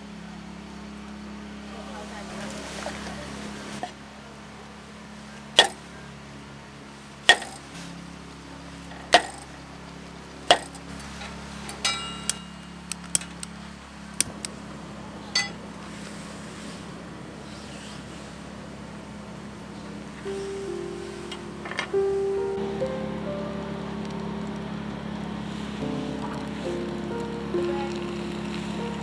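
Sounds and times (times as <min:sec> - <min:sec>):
steady low hum: 0:00.0 - 0:29.0
ringing metallic clinks: 0:11.7 - 0:13.5, 0:15.3 - 0:15.6.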